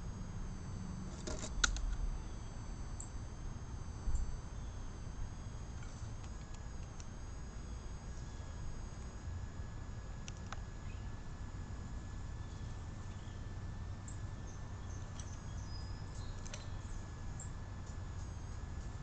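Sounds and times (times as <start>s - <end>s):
sharp clicks: 10.2s - 10.7s
small birds chirping: 10.7s - 11.2s, 12.3s - 17.6s.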